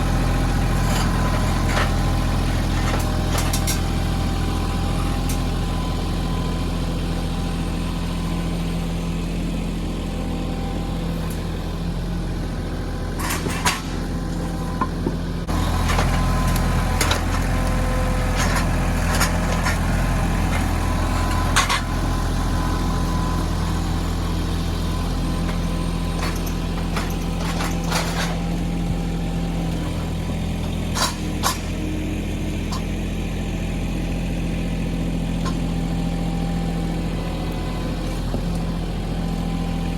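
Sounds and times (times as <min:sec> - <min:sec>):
tractor diesel engine running: 0:00.0 - 0:39.9
metal clanks and knocks: 0:25.4 - 0:28.6, 0:30.8 - 0:31.8.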